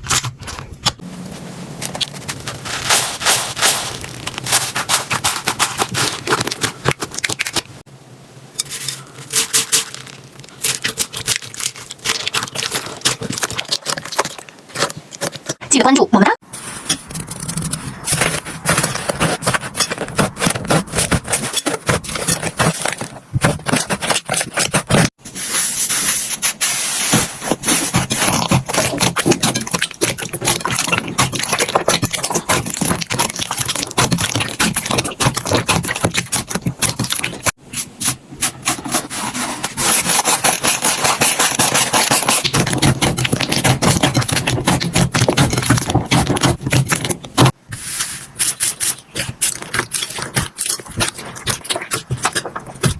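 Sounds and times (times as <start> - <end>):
slime crackling and popping: 1.8 - 7.8, 9.3 - 15.5.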